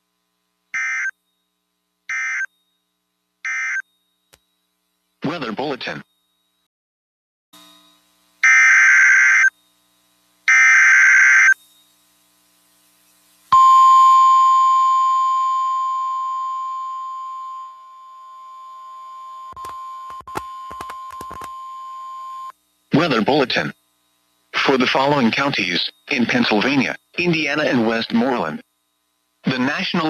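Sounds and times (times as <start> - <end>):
warbling data tones: 0.8 - 1.2, 2.1 - 2.6, 3.4 - 4.0, 8.4 - 9.5, 10.5 - 11.6.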